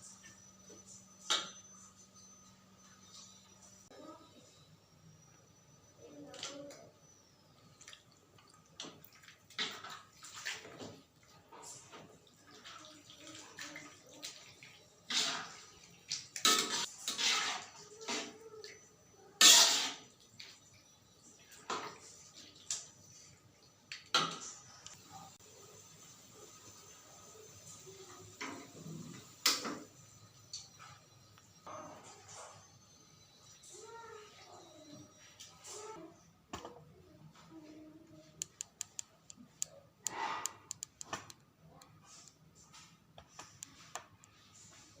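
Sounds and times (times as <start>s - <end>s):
faint steady hum: 0.0s - 16.8s
pots and utensils clattering: 9.6s - 12.2s, 15.1s - 15.7s, 16.4s - 18.4s, 19.4s - 20.2s
sharp light clicks and taps: 38.4s - 42.4s.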